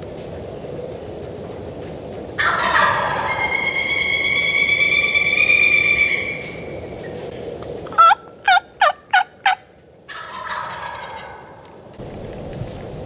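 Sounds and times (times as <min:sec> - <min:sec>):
turkey yelping: 0:02.2 - 0:07.1, 0:07.9 - 0:11.7.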